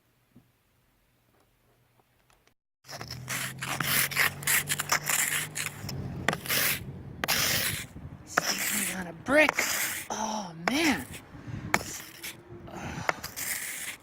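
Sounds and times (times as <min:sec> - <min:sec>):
scraping and crunching in snow: 0:02.8 - 0:14.0
steady low hum: 0:03.6 - 0:08.4.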